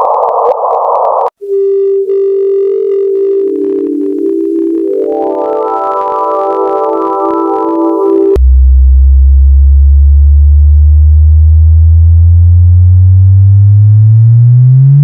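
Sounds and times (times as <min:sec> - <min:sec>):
chord of steady electronic tones: 0:01.4 - 0:08.4
deep hum rising in pitch: 0:07.6 - 0:15.0.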